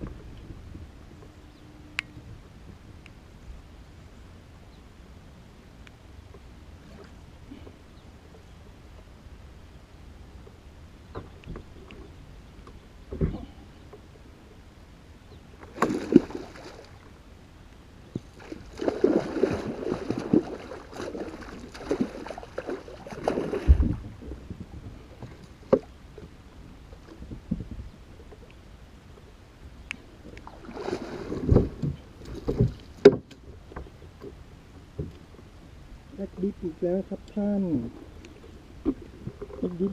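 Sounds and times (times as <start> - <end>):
water splashing against a boat: 15.6 - 17.3, 18.0 - 39.9.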